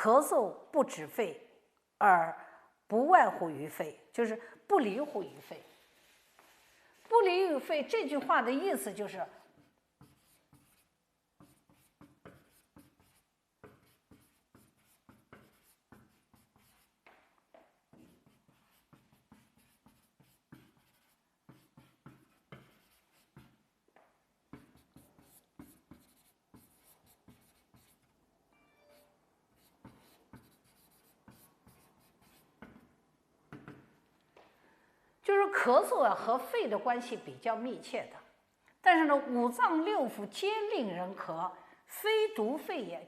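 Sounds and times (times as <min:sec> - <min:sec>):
pen scratching handwriting: 0:09.2 - 0:23.7, 0:24.5 - 0:28.1, 0:28.9 - 0:32.9.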